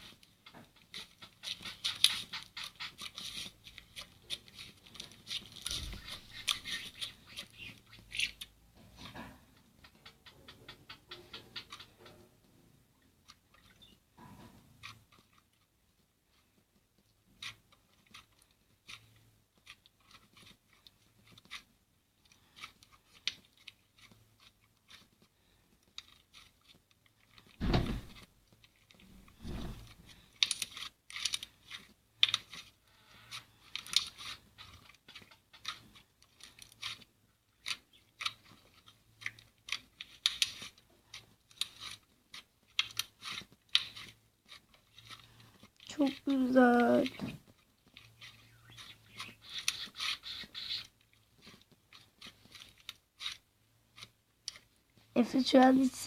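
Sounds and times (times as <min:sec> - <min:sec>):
dull thumps: 0:27.6 - 0:28.2.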